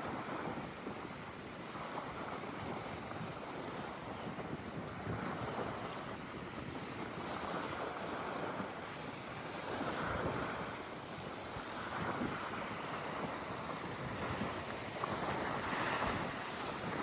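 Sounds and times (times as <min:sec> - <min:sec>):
wind on microphone: 0:00.0 - 0:17.0
sea waves washing: 0:11.8 - 0:17.0.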